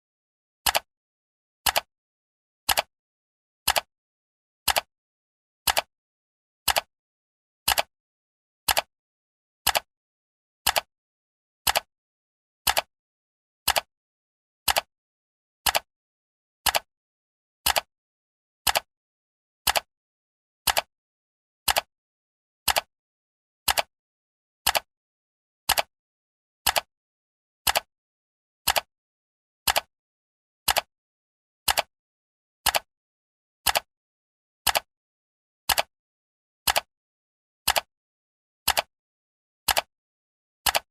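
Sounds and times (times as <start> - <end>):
timer clock ticking: 0.6 - 0.9, 1.6 - 1.9, 2.7 - 2.9, 3.7 - 3.9, 4.7 - 4.9, 5.7 - 5.9, 6.7 - 6.9, 7.7 - 7.9, 8.7 - 8.9, 9.6 - 9.9, 10.6 - 10.9, 11.7 - 11.9, 12.7 - 12.9, 13.7 - 13.9, 14.7 - 14.9, 15.6 - 15.9, 16.6 - 16.9, 17.6 - 17.9, 18.7 - 18.9, 19.7 - 19.9, 20.7 - 20.9, 21.7 - 21.9, 22.7 - 22.9, 23.7 - 23.9, 24.6 - 24.9, 25.7 - 25.9, 26.7 - 26.9, 27.7 - 27.9, 28.7 - 28.9, 29.7 - 29.9, 30.7 - 30.9, 31.7 - 31.9, 32.6 - 32.9, 33.6 - 33.9, 34.7 - 34.9, 35.7 - 35.9, 36.7 - 36.9, 37.7 - 37.9, 38.7 - 38.9, 39.7 - 39.9, 40.6 - 40.9.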